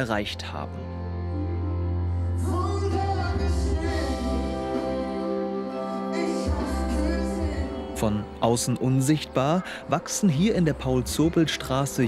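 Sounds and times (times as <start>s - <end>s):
music with held notes and bass: 0.0s - 12.0s
person singing: 1.3s - 10.0s.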